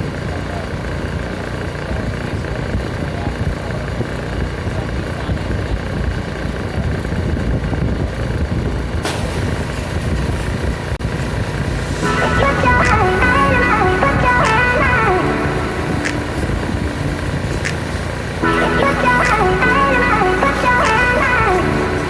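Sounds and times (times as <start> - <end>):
engine rumbling: 0.0 - 22.0
guitar music: 11.7 - 22.0.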